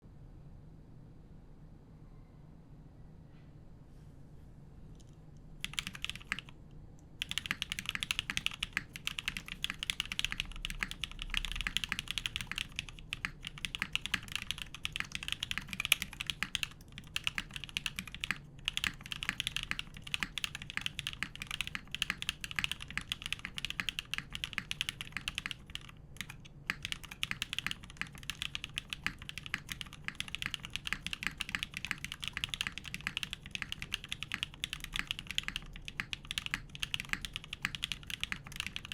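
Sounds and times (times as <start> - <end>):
mechanical keyboard clacking: 5.6 - 6.5, 7.2 - 38.9.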